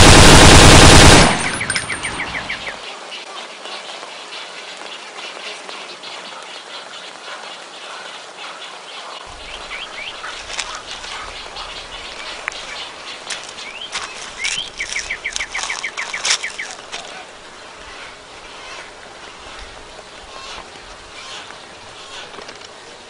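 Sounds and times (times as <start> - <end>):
birds chirping: 0.0 - 23.0
bird trill: 1.3 - 2.8, 9.4 - 16.8
rustling: 9.3 - 23.0.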